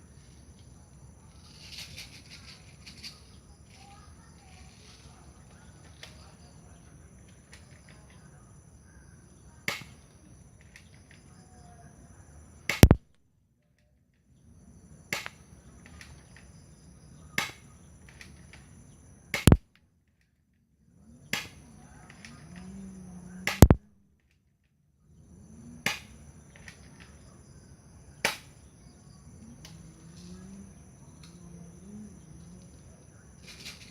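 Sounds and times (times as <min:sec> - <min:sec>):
pistol shot cracks: 0:09.7 - 0:10.0, 0:12.7 - 0:13.0, 0:17.4 - 0:17.6, 0:19.4 - 0:19.6, 0:23.5 - 0:23.8, 0:28.2 - 0:28.5
quiet clicks: 0:21.3 - 0:22.9, 0:23.5 - 0:24.4, 0:29.4 - 0:30.3, 0:31.2 - 0:31.4.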